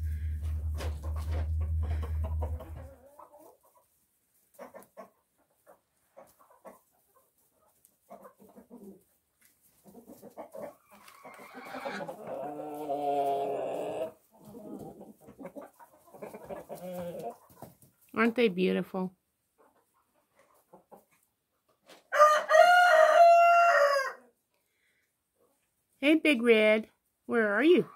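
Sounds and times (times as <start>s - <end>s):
low rumble: 0.0s - 3.2s
chickens clucking: 0.0s - 18.0s, 19.4s - 22.1s
drawn-out chicken call: 9.8s - 17.6s, 22.1s - 24.3s.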